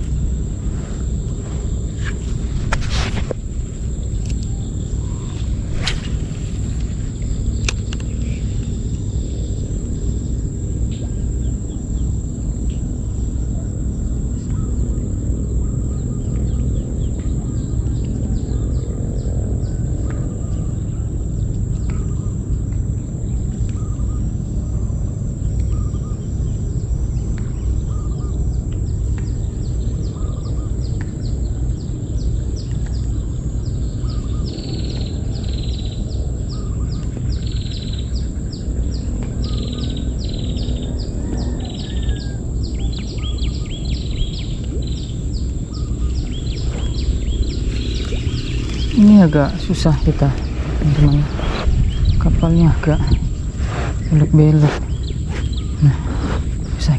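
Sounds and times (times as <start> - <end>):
birds chirping: 0.0 - 12.1, 29.4 - 56.9
steady low rumble: 0.0 - 25.1, 31.4 - 56.9.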